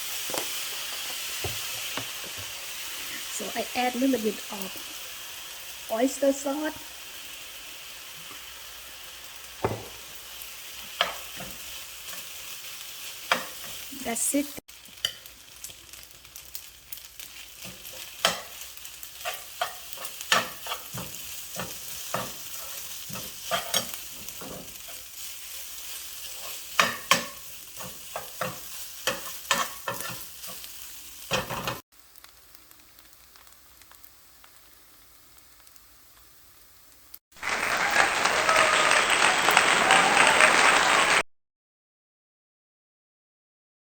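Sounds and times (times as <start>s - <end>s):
rice sizzling in a pan: 0.0s - 41.2s
spatula scraping a pan: 17.2s - 31.8s
loud even noise: 37.4s - 41.2s.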